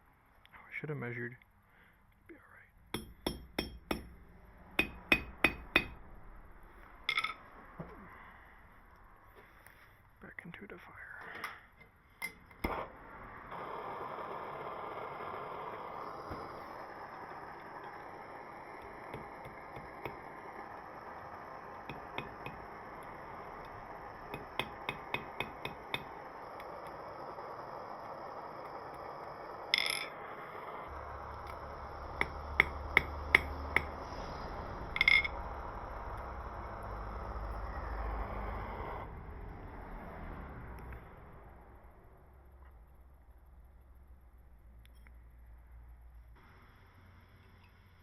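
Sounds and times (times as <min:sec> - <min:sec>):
hammer striking metal: 0:02.9 - 0:04.2, 0:04.8 - 0:06.1, 0:21.9 - 0:22.7, 0:24.3 - 0:26.2, 0:32.2 - 0:34.0.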